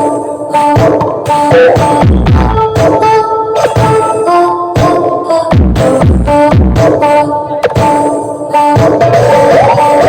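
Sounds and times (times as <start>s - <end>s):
loud electronic dance music: 0.0s - 10.0s
deep bass kicks: 2.0s - 2.8s.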